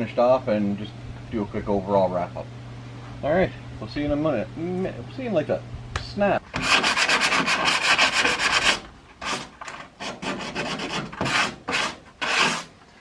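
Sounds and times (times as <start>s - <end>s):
sandpaper rasping on metal: 6.5s - 12.8s.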